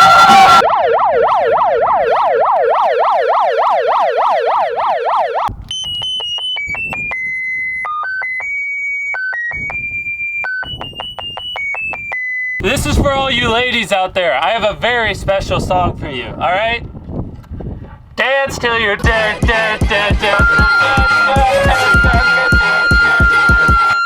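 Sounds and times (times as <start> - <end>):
megaphone siren wailing: 0.0 - 12.2, 19.8 - 24.0
electronic beeping melody: 5.7 - 12.6, 20.2 - 24.0.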